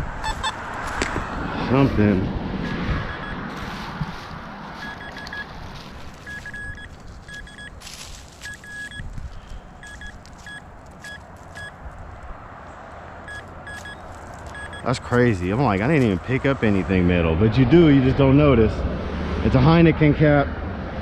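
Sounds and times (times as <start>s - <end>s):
metal detector beeps: 0.2s - 0.6s, 2.6s - 3.4s, 4.8s - 5.5s, 6.2s - 7.8s, 8.4s - 9.1s, 9.8s - 11.8s, 13.3s - 15.0s.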